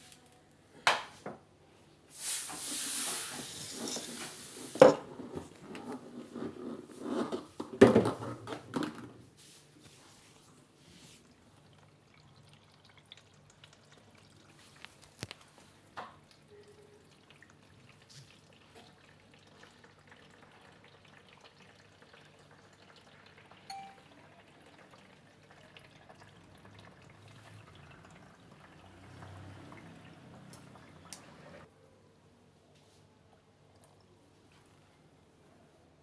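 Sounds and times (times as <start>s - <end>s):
faint dripping and trickling water: 10.6s - 31.7s, 33.3s - 34.8s.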